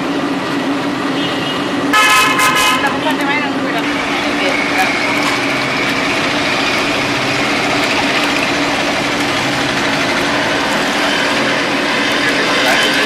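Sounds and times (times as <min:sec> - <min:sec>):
street noise: 0:00.0 - 0:13.0
motor hum: 0:03.8 - 0:13.0.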